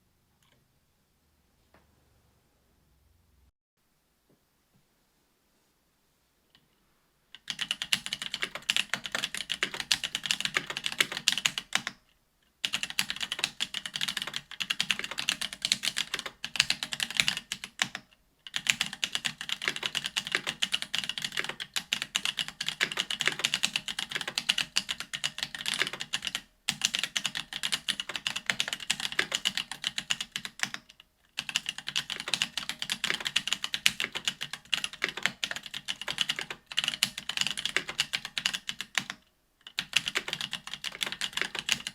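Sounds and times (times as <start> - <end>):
mechanical keyboard typing: 7.4 - 12.0, 12.6 - 41.9.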